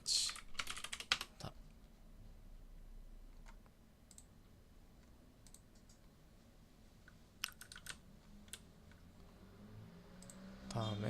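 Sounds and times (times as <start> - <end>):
computer keyboard clicks: 0.3 - 1.3, 7.4 - 9.0
mouse clicks: 3.4 - 4.3, 10.2 - 10.4.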